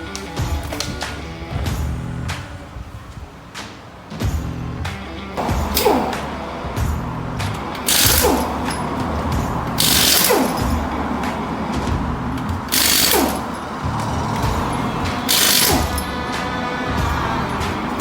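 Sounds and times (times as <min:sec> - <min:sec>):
background music: 0:00.0 - 0:18.0
pneumatic air tool hissing: 0:05.4 - 0:11.9, 0:12.7 - 0:13.6, 0:14.3 - 0:18.0.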